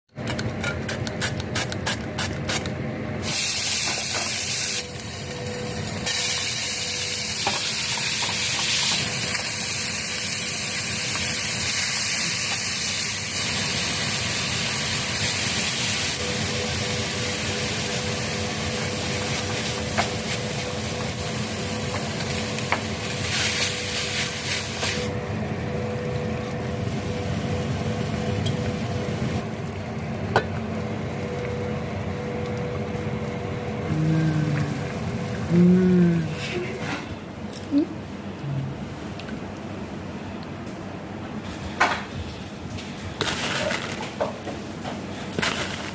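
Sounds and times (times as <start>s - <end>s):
food sizzling in a pan: 3.2s - 25.1s.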